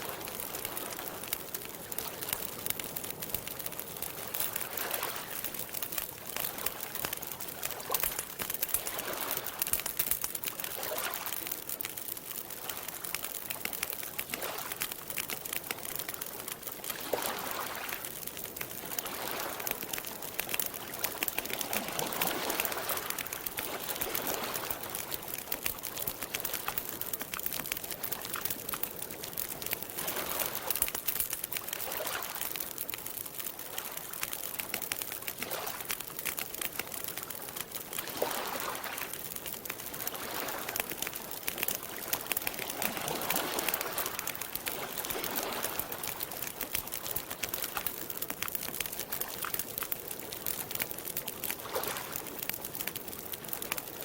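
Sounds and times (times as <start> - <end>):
campfire crackling and popping: 0.0 - 54.0
water lapping gently: 0.0 - 54.0.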